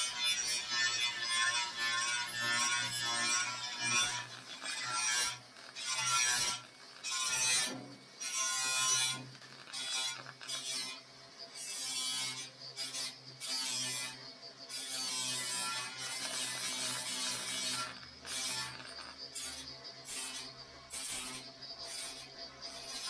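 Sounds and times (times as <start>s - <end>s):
harsh crackling from metalwork: 0.4s - 11.0s, 15.4s - 19.6s.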